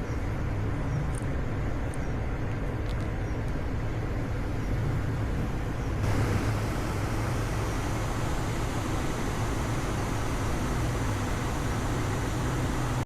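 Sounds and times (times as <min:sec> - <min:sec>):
noisy hiss: 0:03.7 - 0:13.0
low vehicle rumble: 0:04.8 - 0:13.0.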